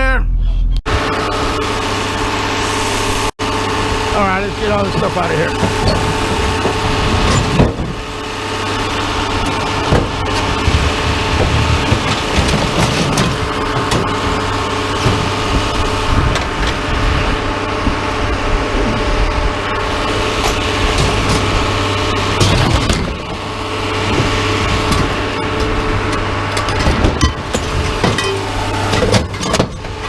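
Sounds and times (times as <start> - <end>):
engine idling: 0.8 - 30.0
scrap metal knocks and clanks: 4.4 - 17.4, 19.6 - 30.0.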